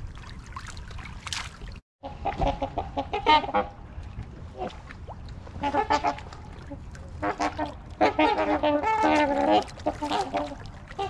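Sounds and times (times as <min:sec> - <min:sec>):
swans honking: 0:02.0 - 0:03.8, 0:05.5 - 0:11.0.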